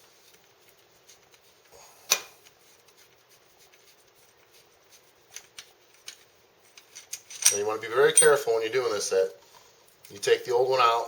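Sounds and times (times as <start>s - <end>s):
handling small parts and tools: 5.3s - 8.5s.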